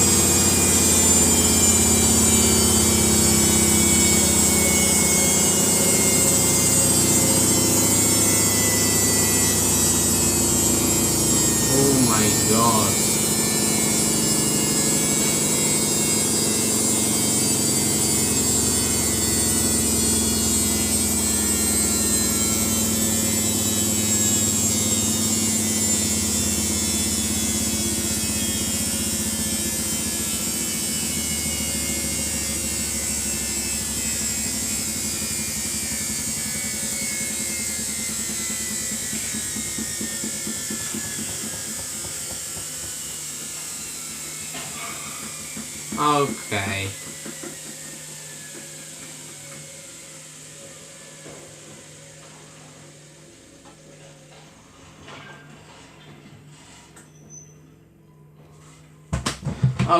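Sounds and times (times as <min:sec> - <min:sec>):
washing machine drum spinning: 0:00.0 - 0:11.7, 0:13.0 - 0:43.8
high motor whine: 0:00.0 - 0:55.6.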